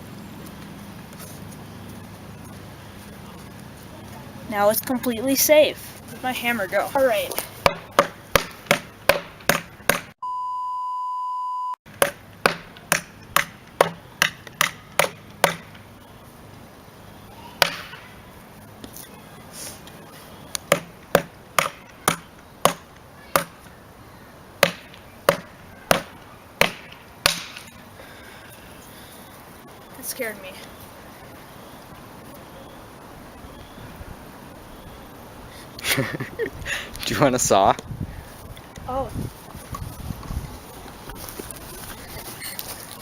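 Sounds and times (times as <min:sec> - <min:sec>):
steady beep tone: 0:10.2 - 0:11.8.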